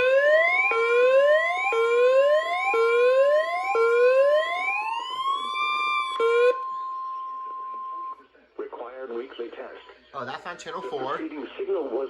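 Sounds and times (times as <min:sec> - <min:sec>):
steady high alarm tone: 0:00.0 - 0:08.2
whooping sirens: 0:00.0 - 0:08.2.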